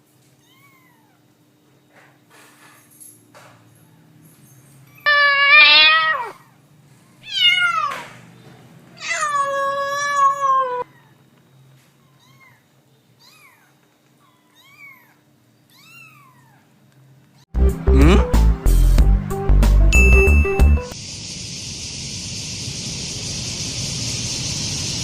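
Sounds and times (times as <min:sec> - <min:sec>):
kitten meowing: 0:05.0 - 0:06.6, 0:07.2 - 0:08.1, 0:09.0 - 0:11.1, 0:13.2 - 0:16.6.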